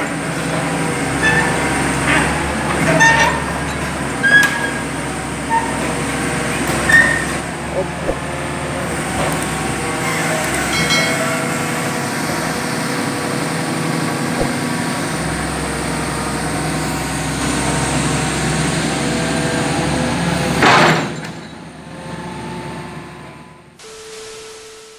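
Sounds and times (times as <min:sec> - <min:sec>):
excavator diesel engine running: 0:00.0 - 0:20.5.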